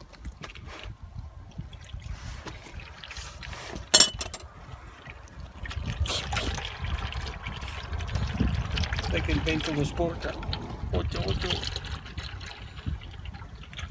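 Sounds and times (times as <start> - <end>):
wind rumbling on microphone: 0.0 - 3.6, 5.1 - 13.9
engine oil trickling: 1.7 - 13.9
sharp metallic clank: 4.0 - 4.4.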